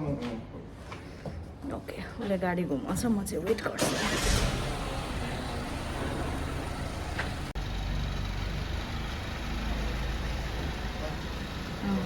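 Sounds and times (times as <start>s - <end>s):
car engine running low rumble: 4.4s - 12.0s.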